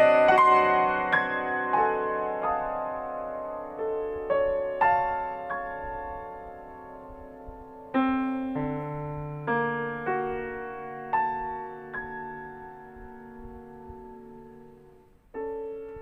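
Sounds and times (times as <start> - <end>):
soft piano chords: 0.0 - 16.0.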